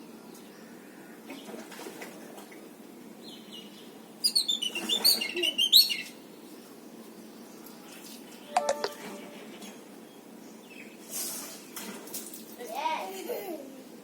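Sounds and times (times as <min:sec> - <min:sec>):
bird chirping: 0:03.3 - 0:06.2.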